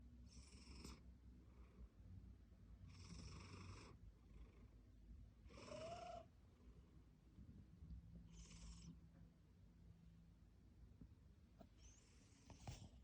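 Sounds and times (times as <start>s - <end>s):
soft cat breaths: 11.6s - 13.0s.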